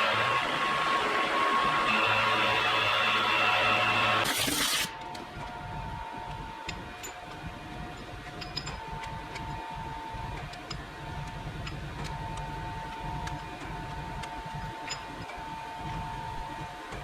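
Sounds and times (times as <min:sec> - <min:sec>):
thin whine: 0:00.0 - 0:06.8
milling machine low hum: 0:00.0 - 0:17.0.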